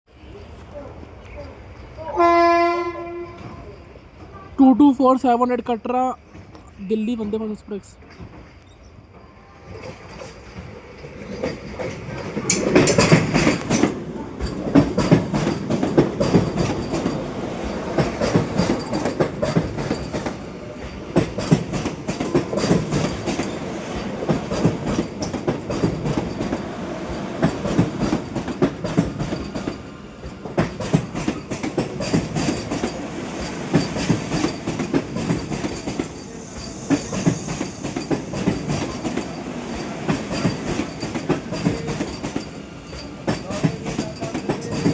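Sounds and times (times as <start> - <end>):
train wheels clattering over rail joints: 9.7 - 44.9.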